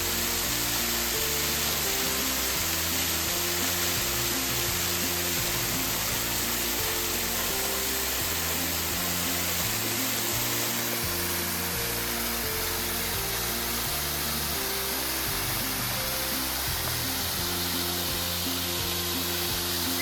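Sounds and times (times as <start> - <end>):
background music low notes: 0.0 - 20.0.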